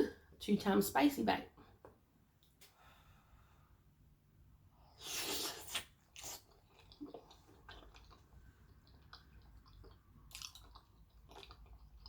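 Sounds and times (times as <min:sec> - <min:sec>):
faint chewing: 0:05.0 - 0:12.0.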